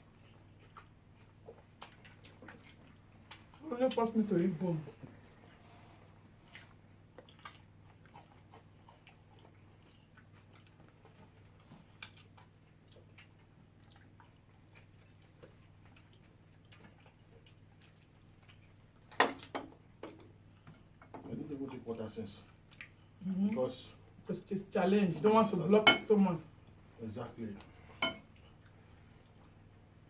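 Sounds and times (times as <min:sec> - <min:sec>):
chewing: 0:00.0 - 0:24.2, 0:27.6 - 0:30.0
low steady hum: 0:00.0 - 0:30.0
cutlery tapping on plates: 0:25.8 - 0:26.1, 0:28.0 - 0:28.2.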